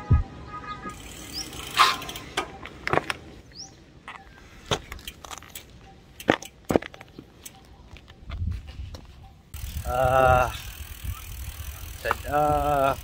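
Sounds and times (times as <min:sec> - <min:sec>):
bicycle clicks and rattles: 0:00.9 - 0:03.3, 0:04.7 - 0:08.2, 0:09.5 - 0:13.0.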